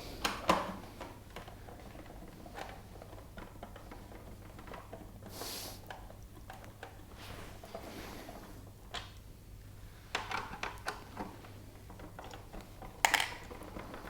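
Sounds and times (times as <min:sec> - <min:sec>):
plastic parts clicking and tapping: 0:10.1 - 0:11.3, 0:11.9 - 0:13.9.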